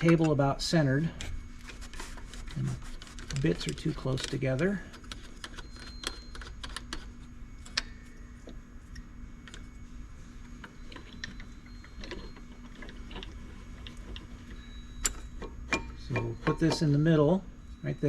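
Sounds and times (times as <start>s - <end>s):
faint steady hum: 0.0s - 18.0s.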